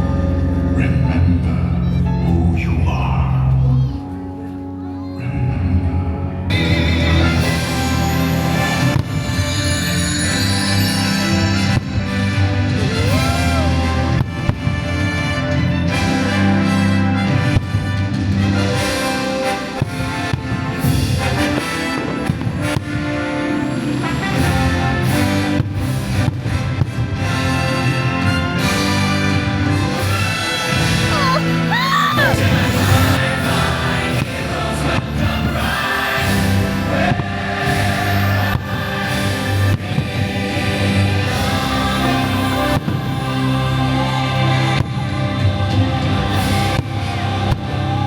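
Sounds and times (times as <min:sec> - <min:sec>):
orchestral music with brass: 0:00.0 - 0:48.0
firework bangs: 0:19.7 - 0:23.4.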